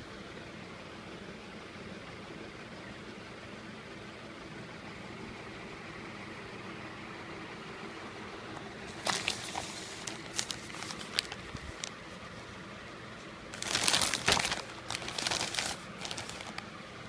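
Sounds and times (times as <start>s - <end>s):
packaging clicks: 8.9s - 12.1s, 13.6s - 16.7s
packaging rustling and crinkling: 8.9s - 12.5s, 13.5s - 16.7s.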